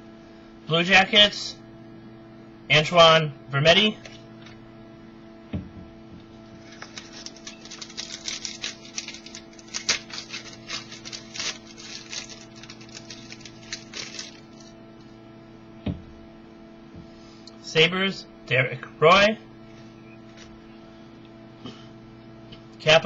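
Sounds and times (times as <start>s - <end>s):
low electrical hum: 0.0s - 23.0s
card packaging crinkling: 6.6s - 14.8s.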